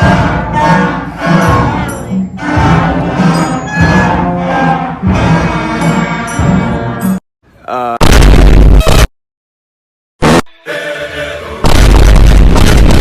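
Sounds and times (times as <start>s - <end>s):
orchestral music with bowed strings: 0.0s - 7.2s.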